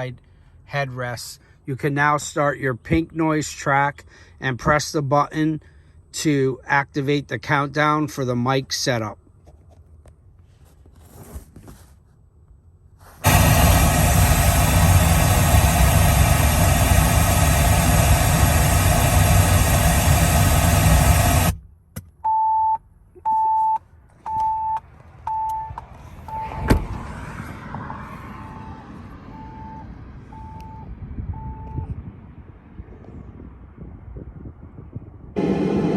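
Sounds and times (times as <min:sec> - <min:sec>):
pink noise through speakers: 0:13.2 - 0:21.6
short electronic beeps: 0:22.2 - 0:26.6, 0:28.4 - 0:31.9.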